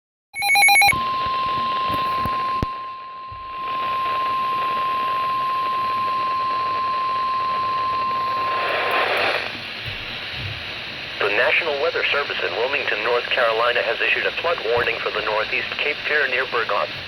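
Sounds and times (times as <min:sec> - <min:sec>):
digital header tones: 0:00.4 - 0:09.4
steady attention tone: 0:00.4 - 0:09.5
radio hiss: 0:03.5 - 0:17.0.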